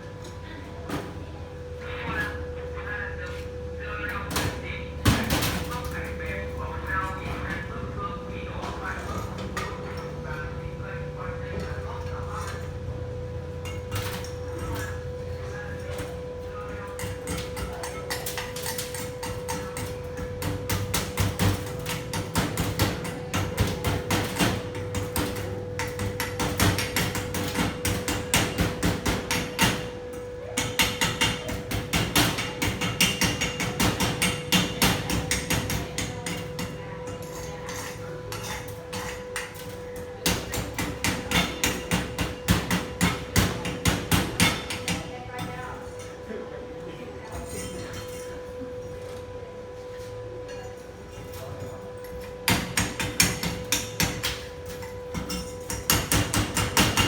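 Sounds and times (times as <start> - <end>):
hammer striking metal: 30.6 - 36.7, 37.8 - 45.1, 52.5 - 54.4, 55.1 - 57.0.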